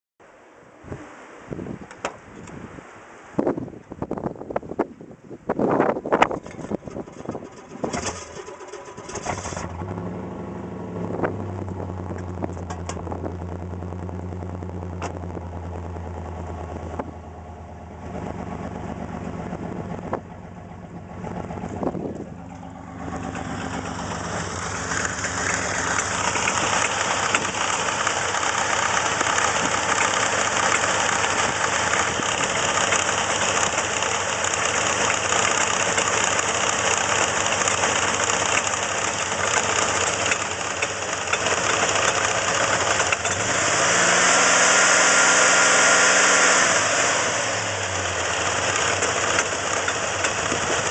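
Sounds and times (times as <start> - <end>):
car engine starting and idling: 6.0 - 50.9
loud rattle from engine bay: 6.2 - 10.0, 18.5 - 43.6, 47.7 - 50.9.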